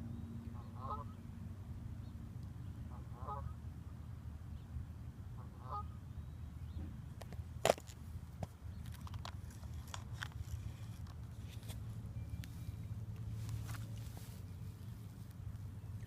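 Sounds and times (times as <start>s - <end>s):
bird honking call: 0.6s - 1.2s, 2.9s - 3.6s, 5.4s - 6.0s.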